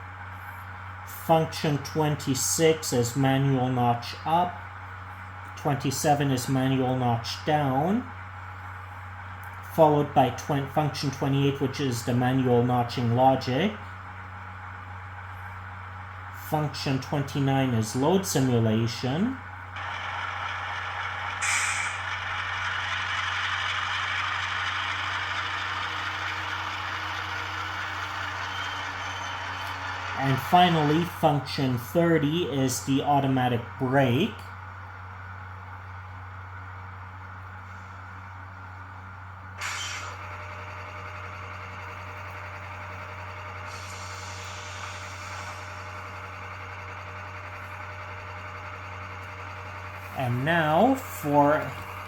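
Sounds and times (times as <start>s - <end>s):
model locomotive diesel engine: 0.0s - 52.0s
air brake hiss: 21.4s - 22.1s, 39.6s - 40.2s, 43.7s - 45.8s
short hiss: 21.4s - 22.2s, 39.6s - 40.2s.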